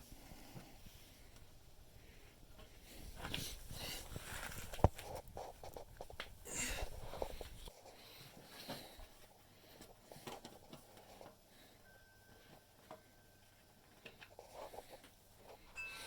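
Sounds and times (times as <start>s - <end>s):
rustles and scrapes of loose parts: 2.6s - 9.0s.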